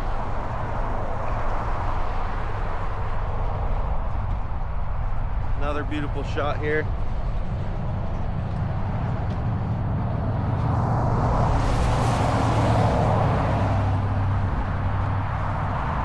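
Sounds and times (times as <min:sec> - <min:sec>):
traffic rumble: 0:00.0 - 0:16.0
passing vehicle tyre hiss: 0:10.4 - 0:16.0.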